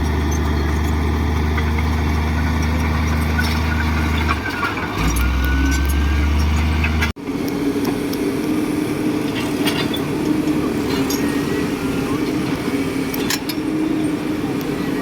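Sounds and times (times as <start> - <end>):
diesel engine running: 0.0 - 15.0
engine drone with high hum: 0.0 - 15.0.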